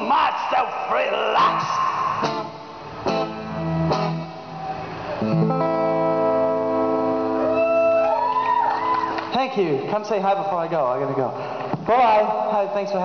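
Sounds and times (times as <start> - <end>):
guitar strummed chords: 1.4 - 7.6.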